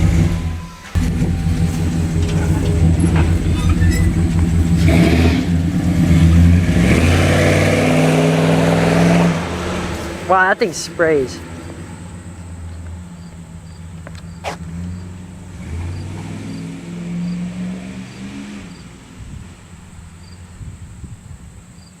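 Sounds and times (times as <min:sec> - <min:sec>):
truck engine rumbling: 0:00.0 - 0:22.0
crickets chirping: 0:10.0 - 0:22.0.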